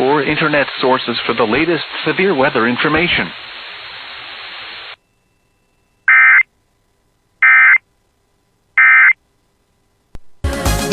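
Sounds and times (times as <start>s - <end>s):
digital data tone bursts: 6.1s - 6.5s, 7.4s - 7.8s, 8.8s - 9.2s.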